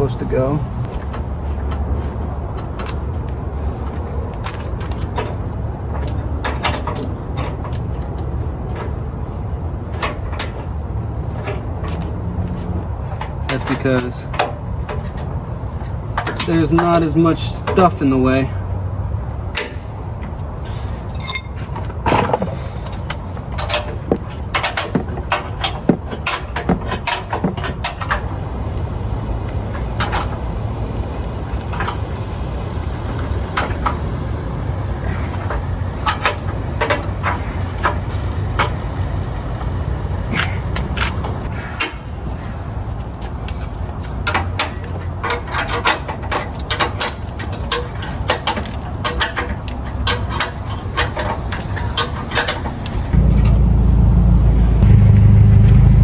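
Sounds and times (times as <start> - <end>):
truck engine idling: 49.8 - 56.0.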